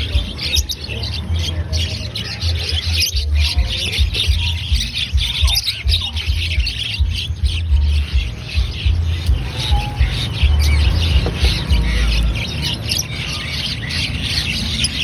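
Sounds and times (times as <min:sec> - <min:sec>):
poultry chirping and squawking: 0:00.0 - 0:15.0
low rumble: 0:03.1 - 0:12.9.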